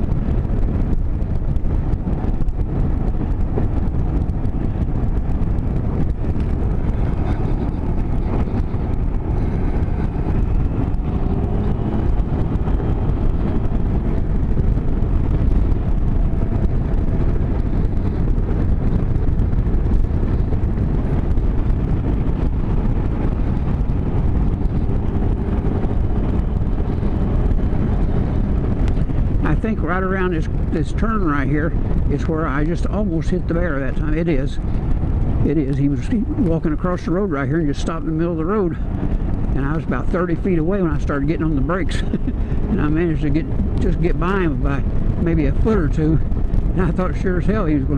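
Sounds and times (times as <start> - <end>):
motorcycle engine running: 0.0 - 47.9
wind rushing over microphone: 0.0 - 47.9.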